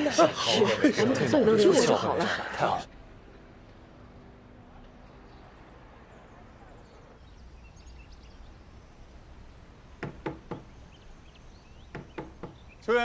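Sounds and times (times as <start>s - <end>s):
faint chirping: 5.3s - 13.0s
knocking on a door: 10.0s - 10.7s, 11.9s - 12.6s.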